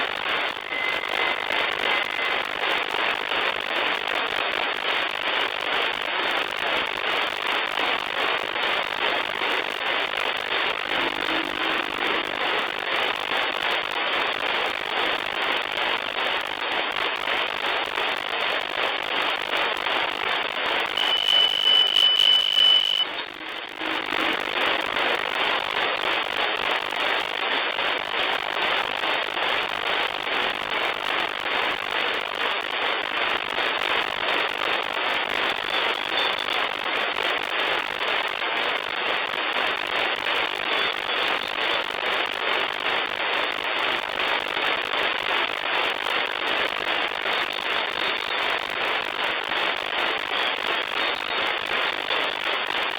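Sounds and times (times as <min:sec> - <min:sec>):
radio static hiss: 0:00.0 - 0:52.9
high steady whistle tone: 0:00.5 - 0:02.4, 0:20.9 - 0:24.8.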